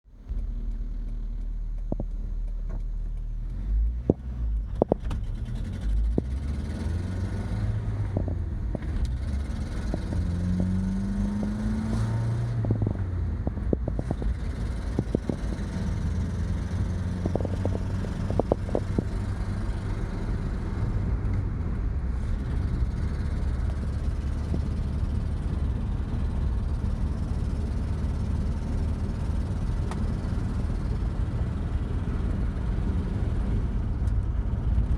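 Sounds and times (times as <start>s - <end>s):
pickup engine revving: 0.3s - 21.6s.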